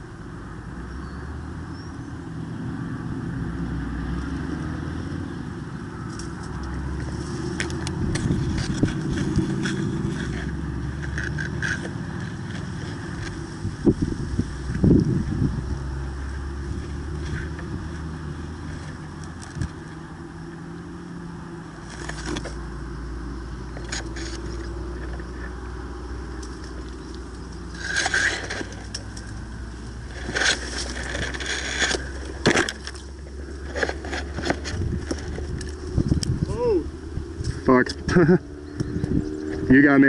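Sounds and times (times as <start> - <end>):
wind rumble on microphone: 1.0 - 20.4, 34.0 - 40.0
crunching and rustling: 6.0 - 15.5, 21.8 - 22.7, 23.7 - 25.6, 26.2 - 36.4.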